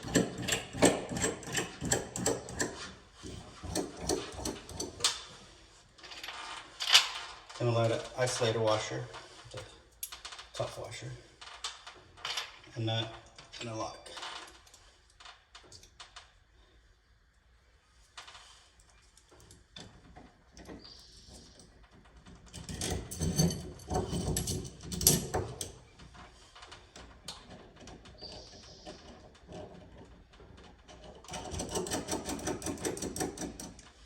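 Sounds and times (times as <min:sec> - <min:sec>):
rapid clicking of spinning nuts: 0:00.0 - 0:05.2, 0:27.4 - 0:34.0
nuts and washers clinking: 0:22.6 - 0:25.8.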